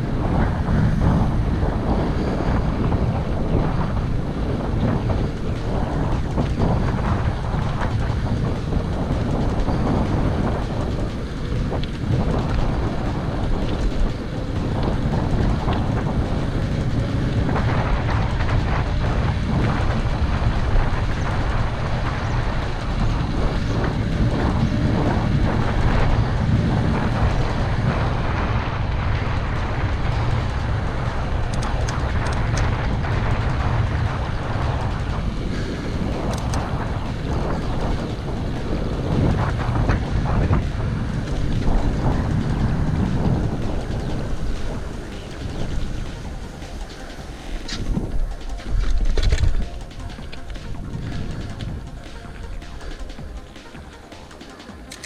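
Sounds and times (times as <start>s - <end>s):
bicycle rumble: 0.0s - 55.0s
wind buffeting microphone: 0.0s - 55.0s
small clicks and rattles: 0.2s - 55.0s.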